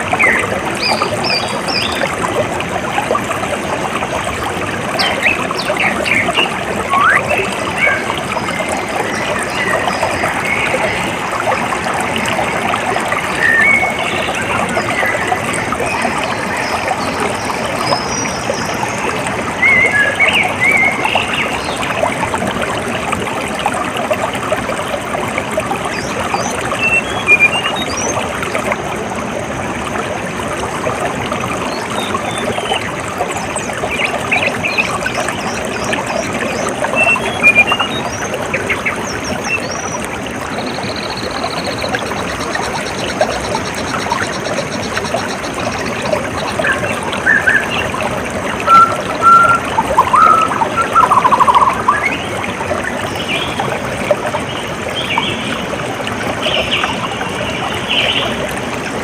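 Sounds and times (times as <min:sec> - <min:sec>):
water trickling and flowing: 0:00.0 - 0:59.0
birds chirping: 0:05.0 - 0:11.2, 0:33.9 - 0:52.3.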